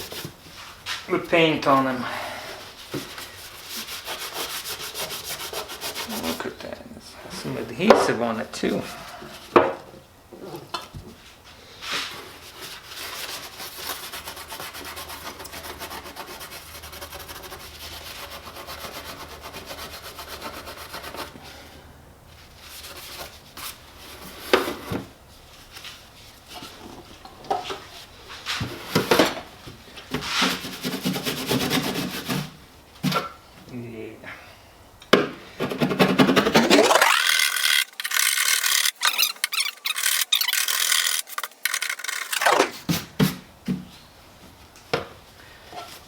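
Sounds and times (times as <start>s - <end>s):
hand sanding plastic: 2.6s - 6.6s, 11.8s - 21.4s, 30.1s - 32.6s, 35.7s - 43.4s.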